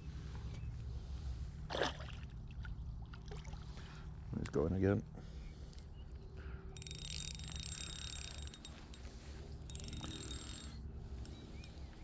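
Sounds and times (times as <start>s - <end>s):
fishing reel whirring click: 9.7s - 11.8s.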